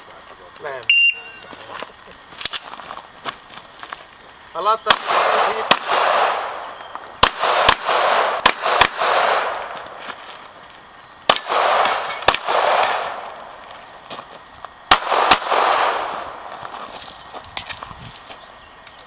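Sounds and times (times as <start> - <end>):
pistol shots with echo: 4.8 - 9.8, 11.3 - 13.6, 14.9 - 16.5.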